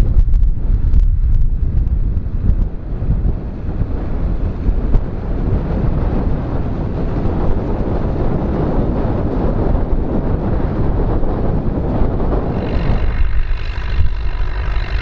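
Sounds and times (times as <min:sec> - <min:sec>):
wind buffeting microphone: 0:00.0 - 0:15.0
tractor engine running: 0:11.7 - 0:15.0.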